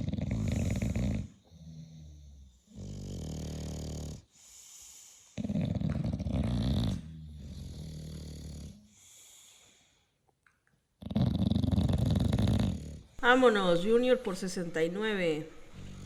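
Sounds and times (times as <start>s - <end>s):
dog snoring: 0.0s - 9.7s, 11.0s - 13.2s, 15.7s - 16.0s.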